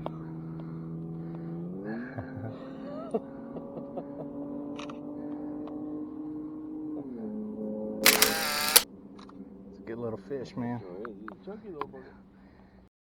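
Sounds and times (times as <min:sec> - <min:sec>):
light clicks: 0:08.0 - 0:09.4.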